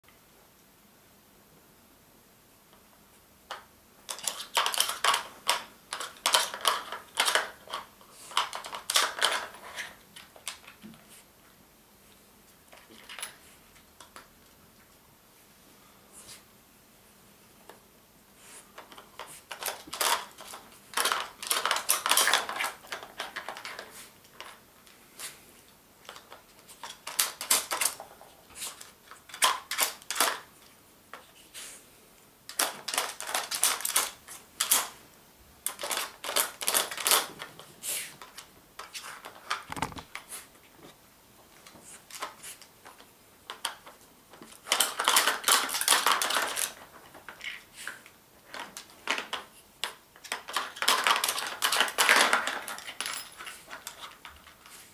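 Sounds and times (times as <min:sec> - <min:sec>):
plastic toy pieces clattering: 0:04.1 - 0:10.6, 0:18.9 - 0:23.8, 0:29.3 - 0:30.4, 0:32.5 - 0:34.9, 0:35.6 - 0:37.3, 0:44.6 - 0:47.5, 0:48.5 - 0:54.5.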